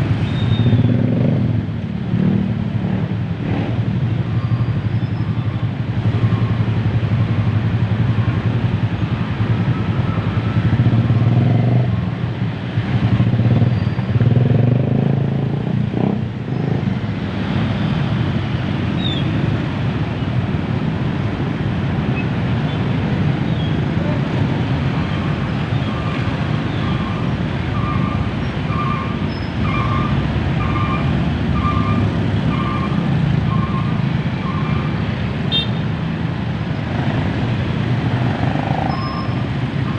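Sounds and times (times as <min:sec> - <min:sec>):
road traffic rumble: 0:00.0 - 0:39.9.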